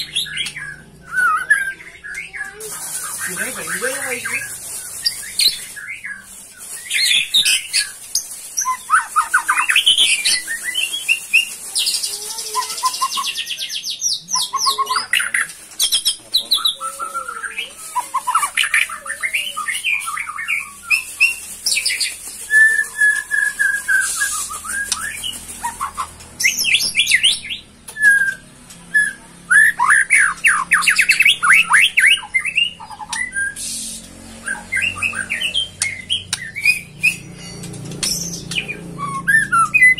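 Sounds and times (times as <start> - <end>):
bird singing: 0.0 - 11.6, 12.2 - 39.9
buzzy rapid bird trill: 2.5 - 27.7.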